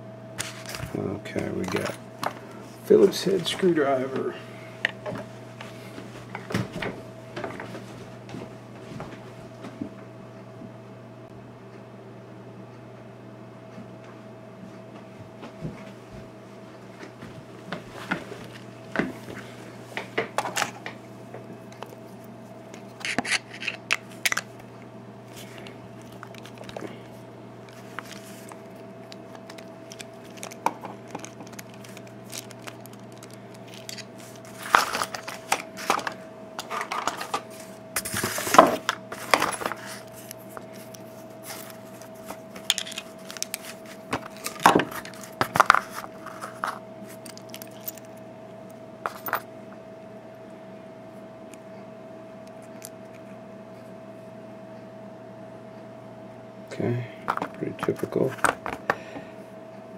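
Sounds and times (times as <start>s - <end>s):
low hum: 18.5s - 59.9s.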